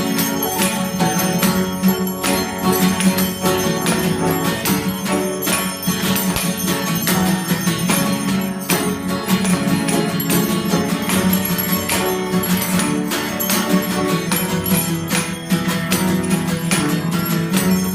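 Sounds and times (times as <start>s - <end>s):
small church bells pealing: 0.0s - 17.9s.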